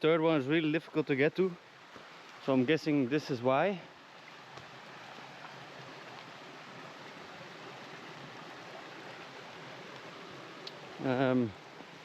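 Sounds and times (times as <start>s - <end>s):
running water: 0.1s - 12.0s
falling rain: 4.3s - 12.0s.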